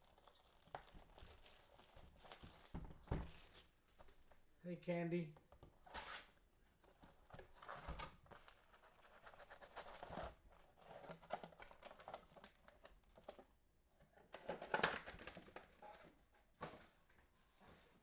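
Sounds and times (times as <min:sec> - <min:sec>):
cellophane wrapper crinkling and tearing: 0:00.0 - 0:04.1, 0:06.8 - 0:13.5.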